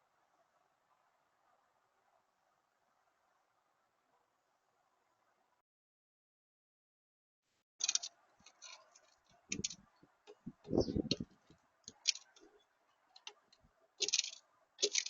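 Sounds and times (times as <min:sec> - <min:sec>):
birds pecking at feeder: 0:07.8 - 0:15.0.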